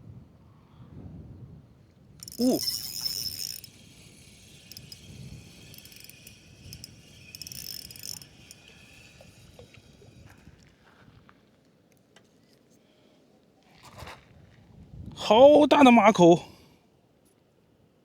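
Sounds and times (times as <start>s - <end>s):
fishing reel ticking rasp: 2.2s - 10.7s.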